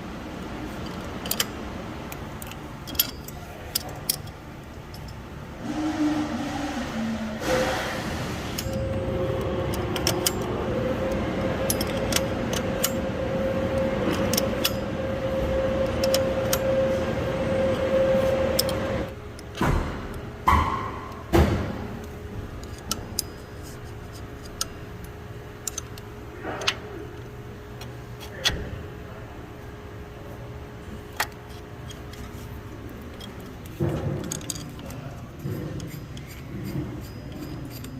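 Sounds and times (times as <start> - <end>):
steady hum: 0.0 - 37.9
metal tools clinking: 34.2 - 37.9.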